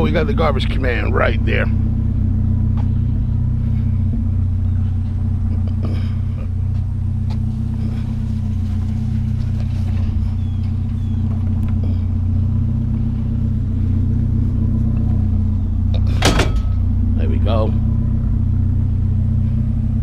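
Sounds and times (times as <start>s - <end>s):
truck engine idling: 0.0s - 20.0s
metal knocks: 16.0s - 16.9s.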